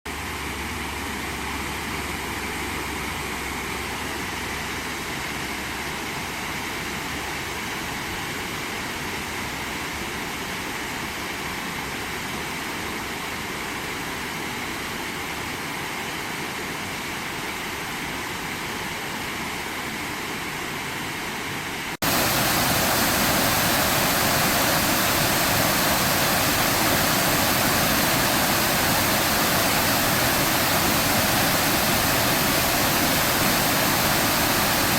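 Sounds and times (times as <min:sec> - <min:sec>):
waterfall rushing: 0:00.1 - 0:34.9.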